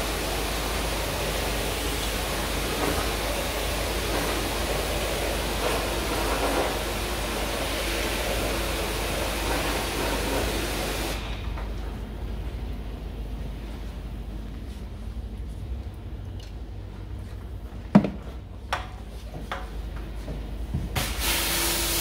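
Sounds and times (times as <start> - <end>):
high-pressure water spray hissing: 0.0 - 11.4, 21.0 - 22.0.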